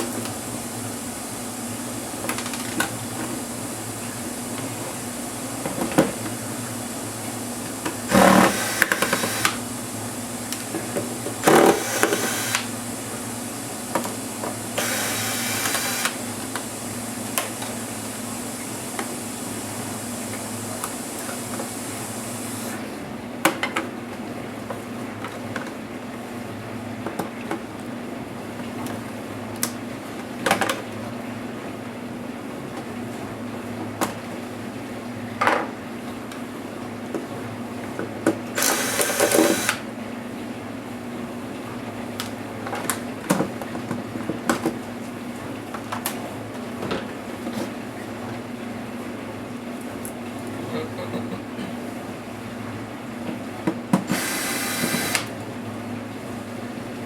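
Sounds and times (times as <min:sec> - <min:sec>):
small motor whirring: 0:08.1 - 0:09.6, 0:11.4 - 0:12.7, 0:14.8 - 0:16.2, 0:38.6 - 0:39.8, 0:54.1 - 0:55.3.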